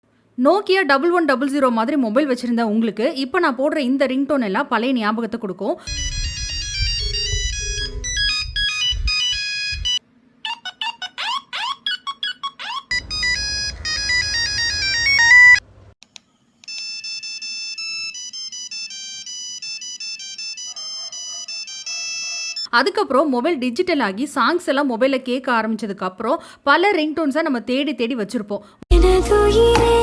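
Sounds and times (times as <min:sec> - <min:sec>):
mobile phone ringtone melodies: 0:05.9 - 0:10.0, 0:12.7 - 0:15.6, 0:16.7 - 0:22.7
simple beeping melody: 0:05.9 - 0:10.0, 0:12.9 - 0:15.6, 0:16.6 - 0:22.7.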